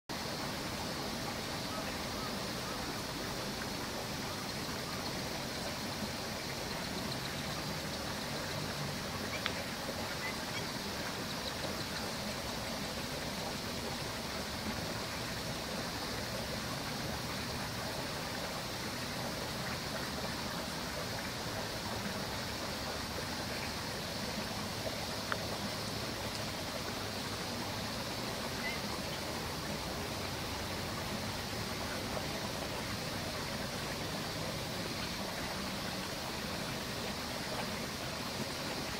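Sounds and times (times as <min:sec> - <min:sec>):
rushing outdoor background noise: 0:00.1 - 0:38.9.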